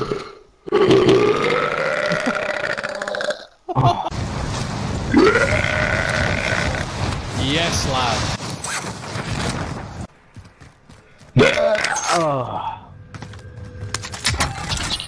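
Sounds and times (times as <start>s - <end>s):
person burping: 0.0s - 4.1s, 11.4s - 12.5s.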